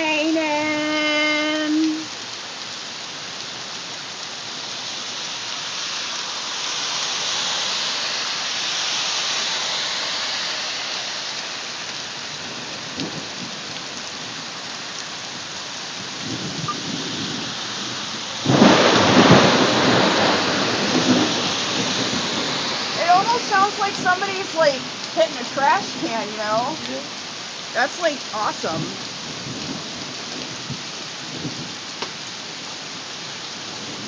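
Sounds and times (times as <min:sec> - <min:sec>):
heavy rain hiss: 0:00.0 - 0:34.0
thunder rumbling: 0:16.0 - 0:31.8
loud thunderclap: 0:16.2 - 0:24.9.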